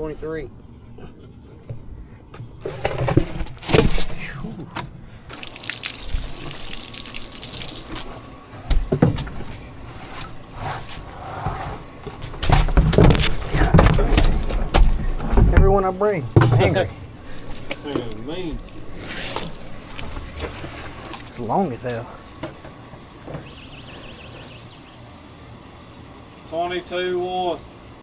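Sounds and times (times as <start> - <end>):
knocks and handling thumps: 1.0 - 5.0, 8.6 - 21.3
water splashing and running: 5.3 - 9.1.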